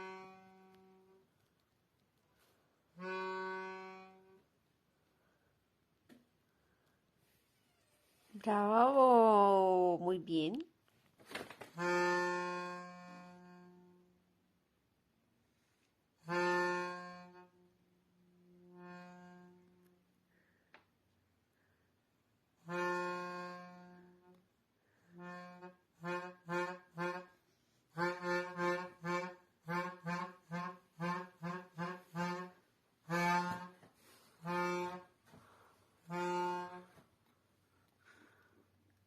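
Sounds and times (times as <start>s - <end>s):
toy wind instrument toots: 22.6s - 24.2s, 25.0s - 33.8s, 36.0s - 36.9s.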